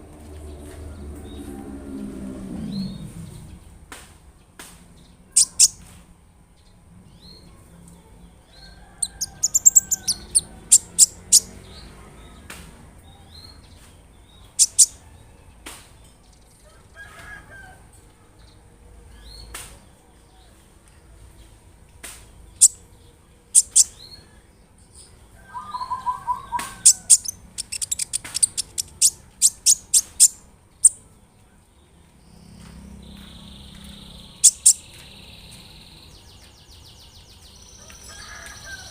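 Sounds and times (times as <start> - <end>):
sunbird high sharp chirps: 5.4 - 5.8, 9.0 - 11.5, 14.6 - 15.0, 23.6 - 24.1, 25.4 - 31.0, 33.0 - 36.3.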